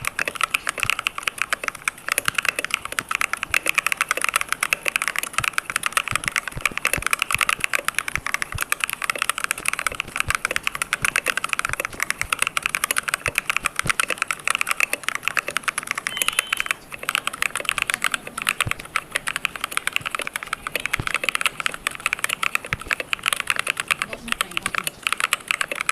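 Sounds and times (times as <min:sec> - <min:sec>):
fast keyboard typing: 0:00.0 - 0:25.9.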